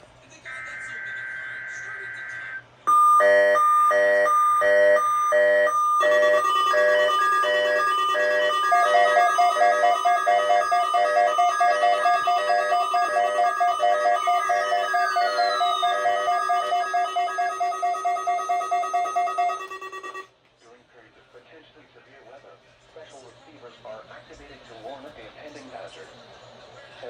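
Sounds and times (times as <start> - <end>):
overlapping alarm tones: 0.8 - 20.3
pulsed electronic alarm beeping: 0.9 - 20.3
falling whine: 2.9 - 20.2.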